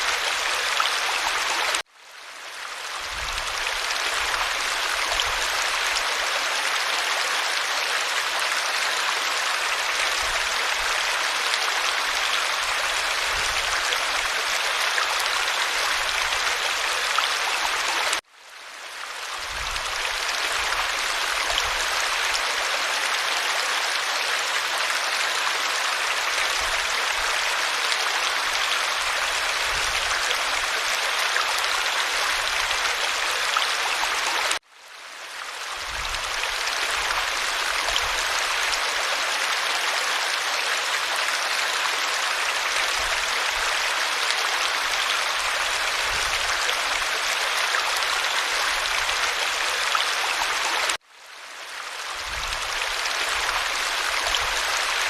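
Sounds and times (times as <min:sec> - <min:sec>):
small stream flowing: 0:00.0 - 0:55.0.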